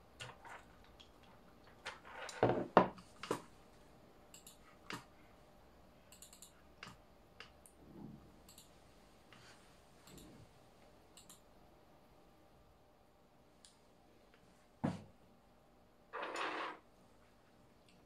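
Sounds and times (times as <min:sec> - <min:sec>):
knocks and clatter on workbench: 0:02.4 - 0:03.4.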